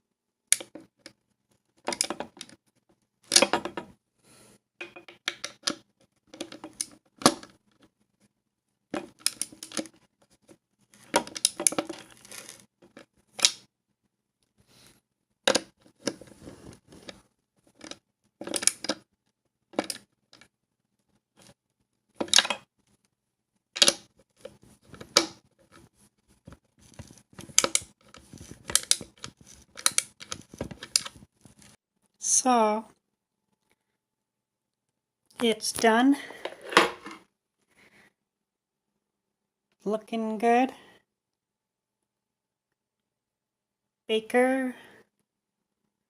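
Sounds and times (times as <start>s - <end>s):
metal clicking and scraping: 15.5s - 19.0s, 23.8s - 31.8s.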